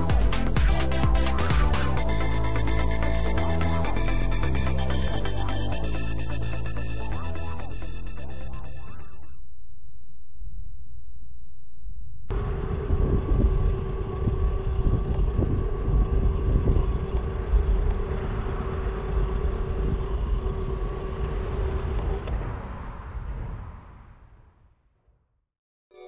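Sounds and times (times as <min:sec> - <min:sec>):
electric motor whine: 0:12.3 - 0:22.4
heavy rumble with knocks: 0:12.3 - 0:24.1.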